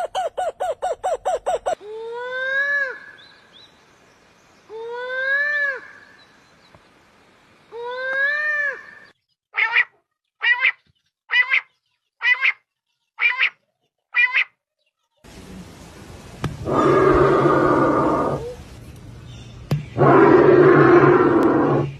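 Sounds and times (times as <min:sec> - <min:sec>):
animal calls: 0:16.6 - 0:18.6, 0:20.0 - 0:21.9
rough noisy animal call: 0:16.6 - 0:18.6, 0:20.0 - 0:21.9.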